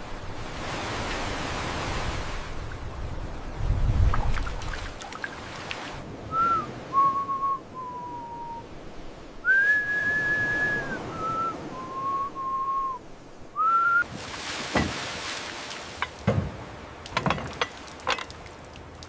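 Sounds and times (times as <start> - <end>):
person whistling: 6.3 - 8.6, 9.4 - 13.0, 13.6 - 14.1.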